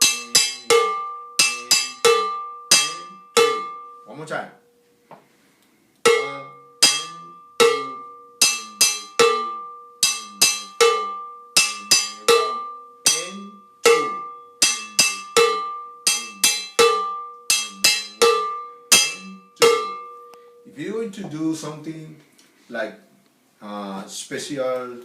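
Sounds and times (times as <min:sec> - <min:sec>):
cowbell struck with a stick: 0:00.0 - 0:04.1, 0:06.1 - 0:20.7.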